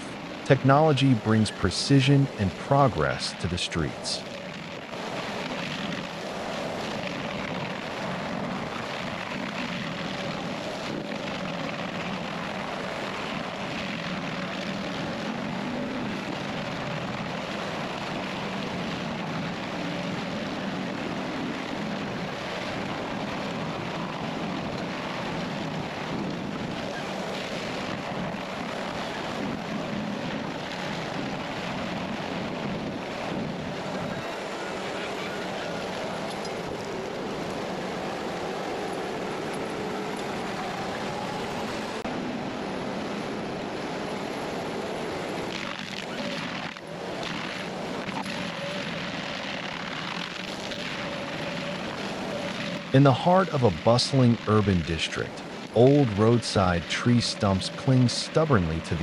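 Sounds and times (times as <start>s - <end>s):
machine engine droning: 0.0s - 59.0s.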